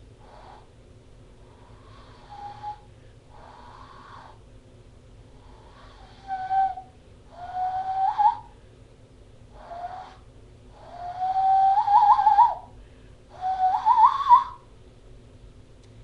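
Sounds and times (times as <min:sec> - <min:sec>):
person hooting through cupped hands: 0:05.3 - 0:08.5, 0:09.5 - 0:12.7, 0:13.3 - 0:14.7.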